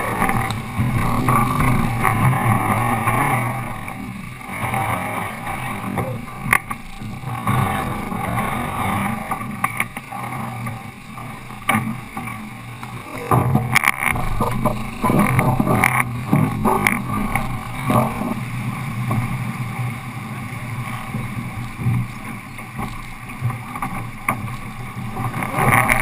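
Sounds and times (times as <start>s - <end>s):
wind and water rushing: 0.0s - 26.0s.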